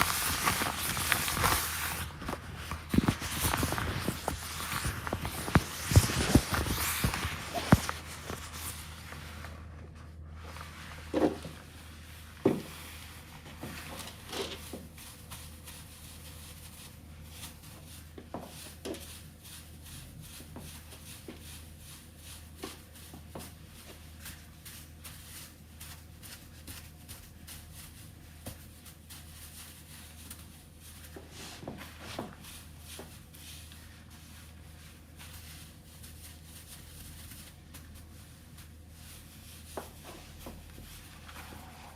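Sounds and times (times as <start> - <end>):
handling noises: 0.0 - 10.1
low steady hum: 0.0 - 41.9.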